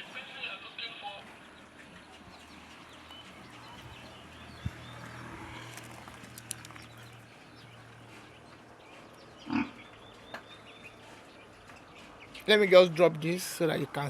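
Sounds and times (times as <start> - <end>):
bird chirps: 1.4 - 12.5
pigs shuffling in a pen: 1.9 - 9.4.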